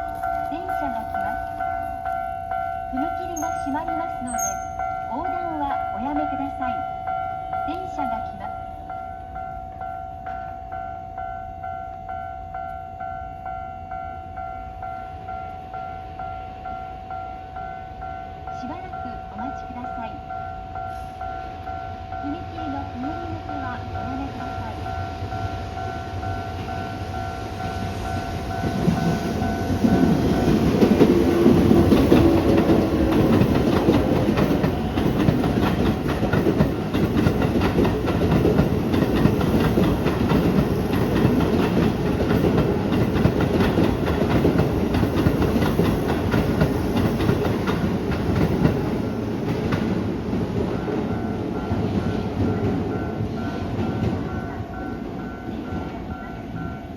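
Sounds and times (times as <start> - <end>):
level crossing warning bell: 0.0 - 56.9
train wheels clattering over rail joints: 28.6 - 54.3.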